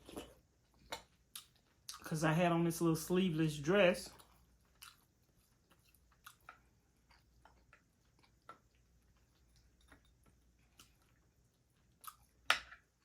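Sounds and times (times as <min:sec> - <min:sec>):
faint chewing mouth clicks: 0:00.0 - 0:02.1, 0:04.1 - 0:12.4.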